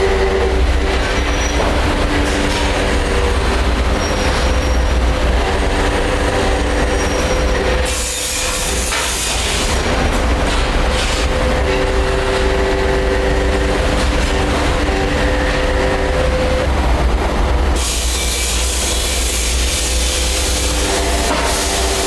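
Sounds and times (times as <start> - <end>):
steady squealing tones: 0.0 - 7.9
pipe making machinery running: 0.0 - 22.0.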